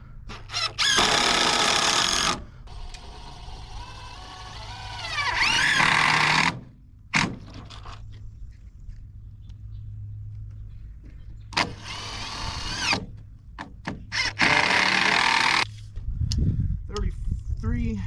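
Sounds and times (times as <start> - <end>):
power tool motor whining: 0.3 - 6.6, 11.6 - 13.1, 14.1 - 15.7.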